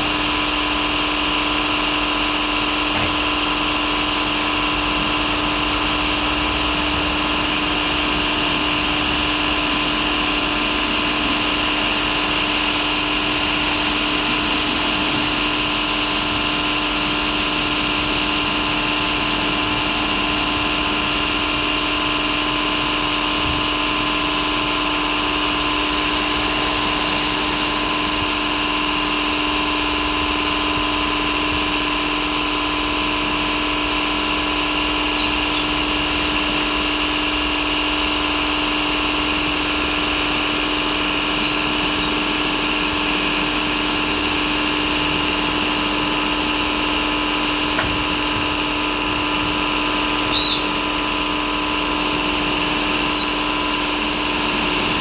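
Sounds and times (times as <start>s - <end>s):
car wash machinery whining: 0.0s - 55.0s
rushing hiss: 25.7s - 28.4s.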